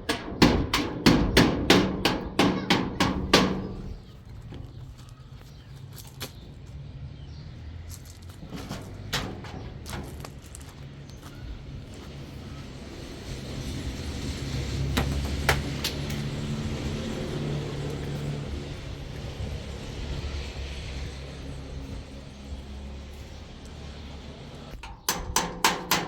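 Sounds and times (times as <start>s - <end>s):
vehicle engine running: 7.8s - 24.8s.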